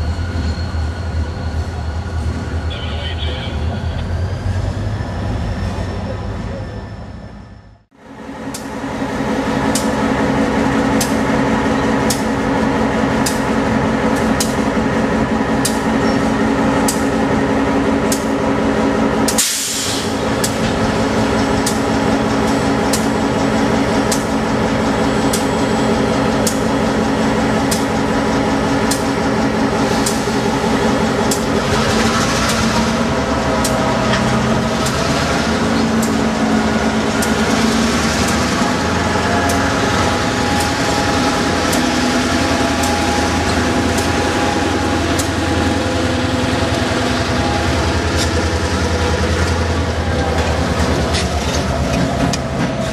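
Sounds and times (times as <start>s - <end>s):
locomotive engine hum: 0.0s - 52.9s
train wheels clicking on rail joints: 9.6s - 10.0s, 10.9s - 12.4s, 13.2s - 14.8s, 15.6s - 17.2s, 18.0s - 18.4s, 19.2s - 25.6s, 26.2s - 52.9s
hiss: 19.3s - 20.1s.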